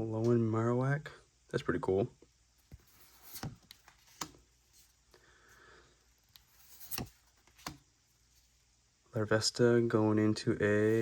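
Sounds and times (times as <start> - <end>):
trading cards sliding: 2.6 - 5.0, 6.2 - 8.6
card edges clicking: 2.7 - 4.5, 6.4 - 7.9.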